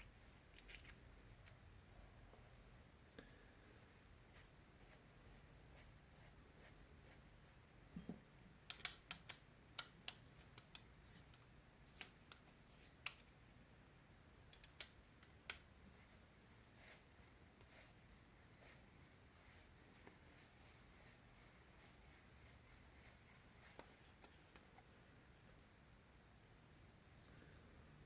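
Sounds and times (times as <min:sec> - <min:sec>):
metal tools clicking and tapping: 0:08.7 - 0:11.4, 0:14.5 - 0:15.7.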